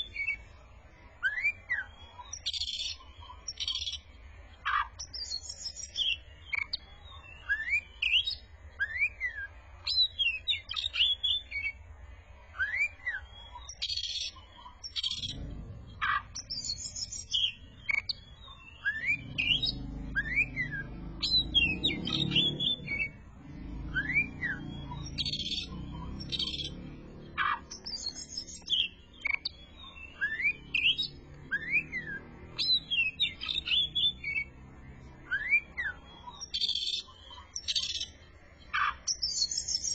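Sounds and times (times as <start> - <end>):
songbird whistling song: 0.0 - 0.6, 1.2 - 4.1, 4.7 - 11.8, 12.6 - 34.6, 35.2 - 39.9
low rumble: 15.2 - 16.8.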